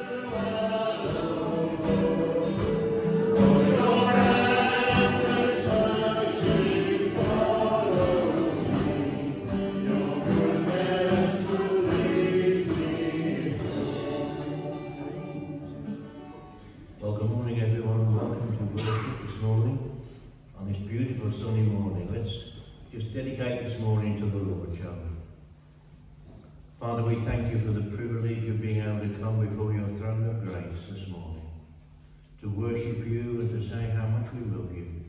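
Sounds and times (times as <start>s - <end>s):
group singing church music: 0.0s - 16.9s
steady accompaniment: 0.0s - 16.9s.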